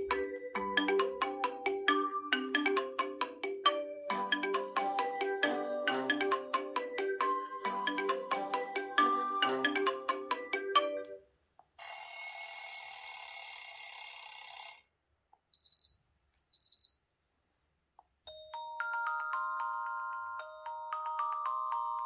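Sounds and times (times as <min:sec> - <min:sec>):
chiming melody: 0:00.0 - 0:11.2, 0:18.3 - 0:22.0
phone ringtone melody: 0:00.0 - 0:11.2, 0:11.8 - 0:14.9, 0:18.3 - 0:22.0.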